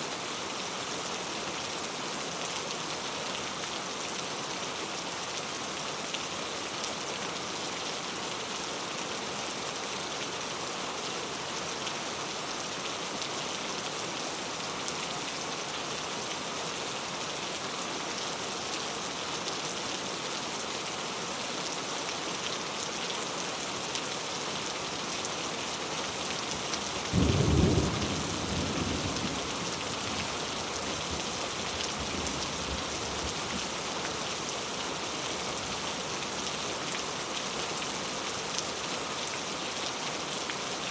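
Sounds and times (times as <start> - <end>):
rain falling into puddle: 23.5 - 40.9.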